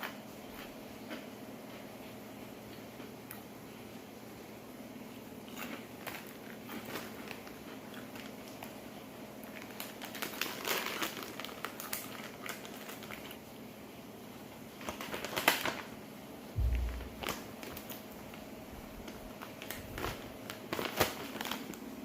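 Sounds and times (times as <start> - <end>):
crinkling and rustling: 5.5 - 8.8, 9.4 - 13.4, 14.8 - 15.9, 16.6 - 22.0.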